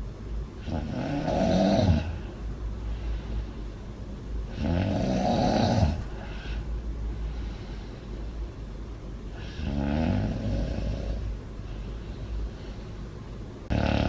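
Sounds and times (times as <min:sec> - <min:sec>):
woman snoring loudly: 0:00.6 - 0:02.2, 0:04.5 - 0:06.0, 0:09.4 - 0:11.3, 0:13.7 - 0:14.0.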